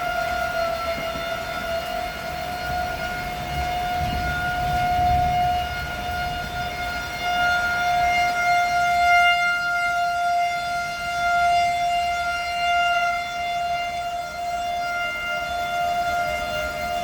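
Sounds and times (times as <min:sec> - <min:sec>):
low wind rumble: 0:00.0 - 0:08.4
storm warning siren: 0:00.0 - 0:17.0.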